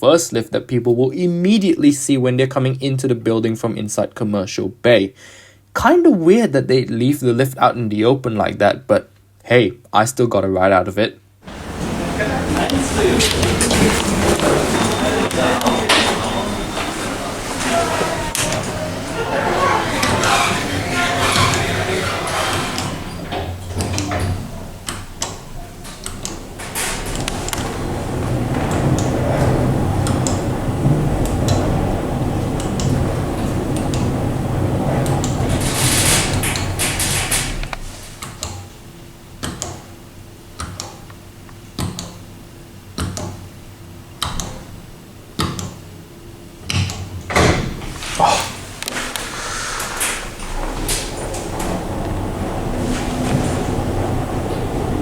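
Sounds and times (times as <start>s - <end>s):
lift doors clicking and knocking: 11.4s - 38.7s, 46.6s - 55.0s
steady low hum: 11.4s - 55.0s.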